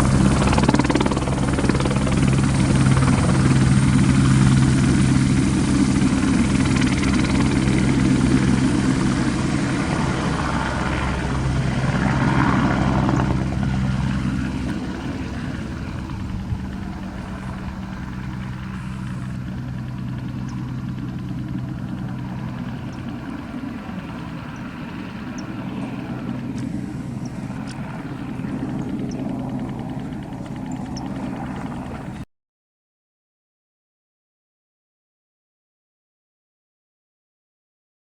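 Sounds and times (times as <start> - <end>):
helicopter running: 0.0 - 32.3.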